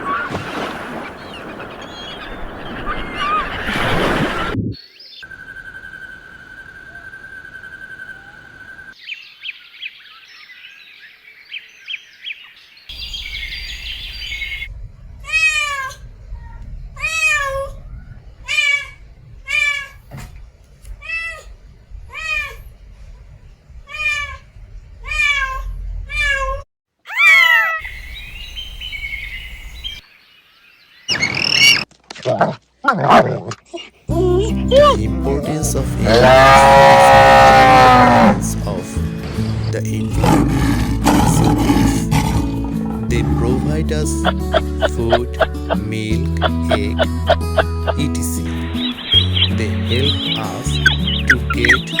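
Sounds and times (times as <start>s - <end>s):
other animal calls: 0.0s - 4.6s, 36.0s - 38.5s, 40.2s - 52.0s
cat meowing: 25.0s - 27.8s.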